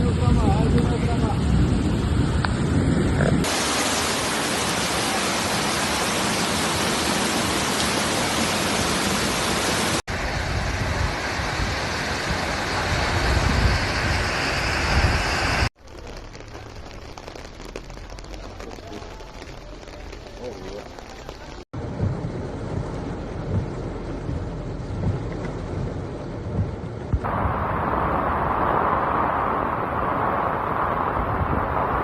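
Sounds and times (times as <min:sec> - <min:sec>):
heavy rain: 0:00.0 - 0:32.0
rushing floodwater: 0:03.4 - 0:21.6, 0:27.2 - 0:32.0.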